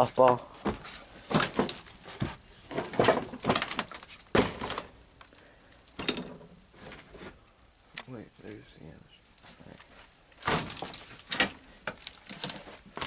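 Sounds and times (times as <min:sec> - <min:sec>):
junk clattering and knocking: 0:00.6 - 0:04.9, 0:06.0 - 0:07.0, 0:10.4 - 0:13.0.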